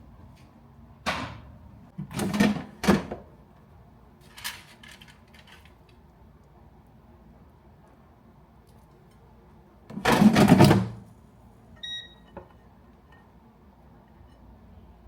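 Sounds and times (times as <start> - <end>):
appliance electronic beep: 11.8 - 12.4.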